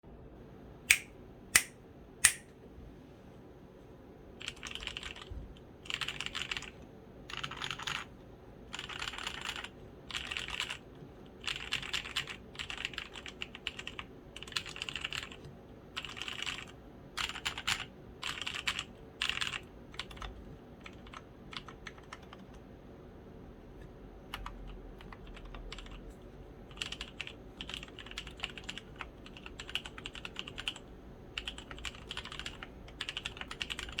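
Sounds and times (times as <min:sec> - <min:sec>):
loud sharp clicks: 0:00.9 - 0:02.5
mechanical keyboard typing: 0:04.4 - 0:08.1, 0:08.7 - 0:22.6, 0:24.3 - 0:26.0, 0:26.7 - 0:34.0.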